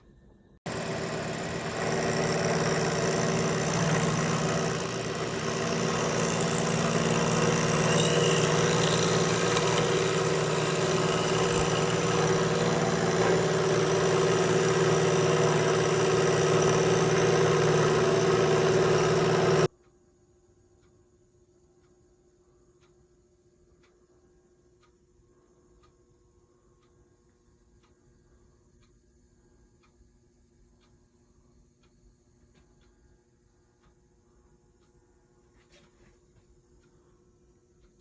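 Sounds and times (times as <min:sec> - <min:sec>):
machine humming and whining: 0:00.7 - 0:19.7.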